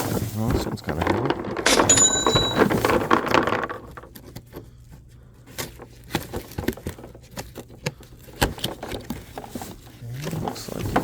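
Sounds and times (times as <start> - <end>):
items clicking and knocking: 0.0 - 4.7.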